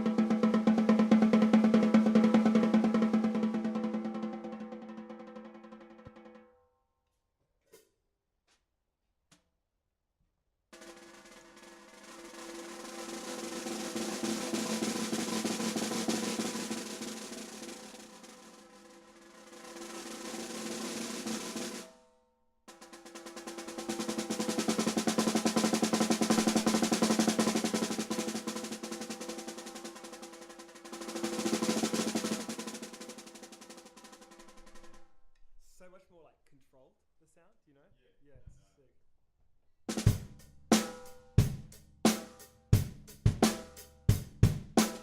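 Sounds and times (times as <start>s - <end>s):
snare drum rolls: 0.0s - 6.4s, 10.8s - 21.9s, 22.7s - 35.0s, 39.9s - 45.0s.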